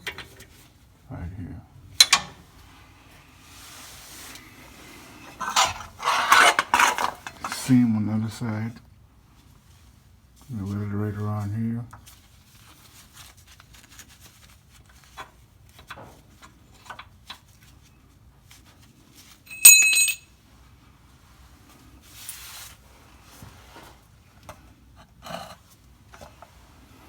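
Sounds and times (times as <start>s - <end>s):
metal tools clicking and knocking: 0.0s - 0.5s, 2.0s - 2.4s, 5.4s - 7.7s, 19.5s - 20.2s
ringing clank of metal: 19.5s - 20.2s.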